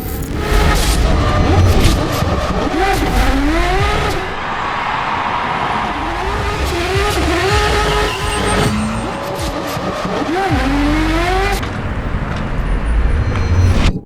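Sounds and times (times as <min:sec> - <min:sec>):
car engine revving: 0:00.0 - 0:13.9.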